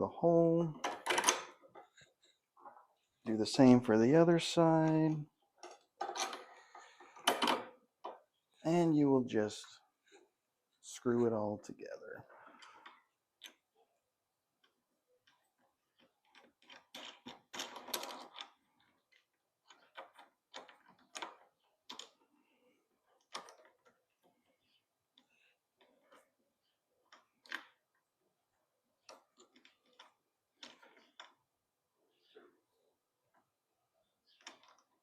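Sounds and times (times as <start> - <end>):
plastic parts clicking: 14.6 - 22.2.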